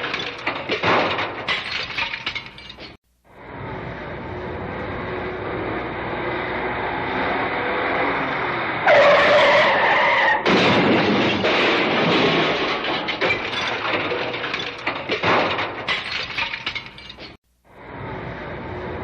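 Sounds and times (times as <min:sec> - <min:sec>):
loud car crash: 0:00.0 - 0:02.9, 0:08.8 - 0:17.4
debris clattering: 0:00.0 - 0:03.0, 0:10.4 - 0:17.4
vehicle engine running: 0:03.2 - 0:07.0
tyres screeching: 0:08.1 - 0:10.6.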